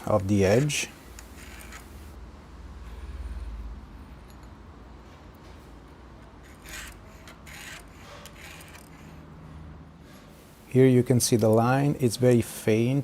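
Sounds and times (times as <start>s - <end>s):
scriber scratching steel: 0.0s - 2.2s, 6.2s - 9.3s.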